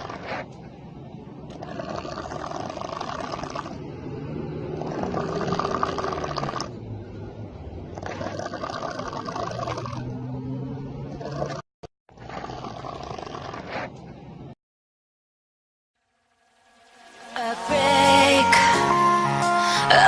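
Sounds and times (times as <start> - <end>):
person snoring loudly: 1.6 - 3.8, 4.7 - 6.7.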